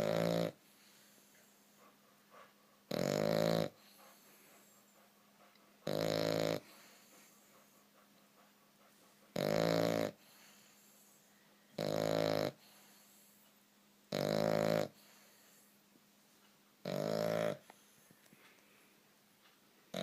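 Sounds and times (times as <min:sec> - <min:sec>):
puppy snoring raspily: 0:00.0 - 0:05.0, 0:05.8 - 0:07.7, 0:09.2 - 0:13.4, 0:14.1 - 0:15.6, 0:16.8 - 0:18.0.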